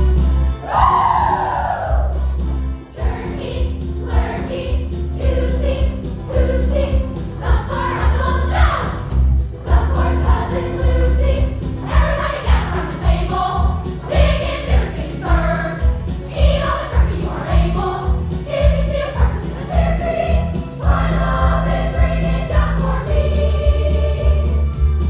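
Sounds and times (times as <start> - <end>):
choir singing: 0.6 - 2.2, 2.9 - 25.0
band with pulsing bass line: 1.9 - 25.0.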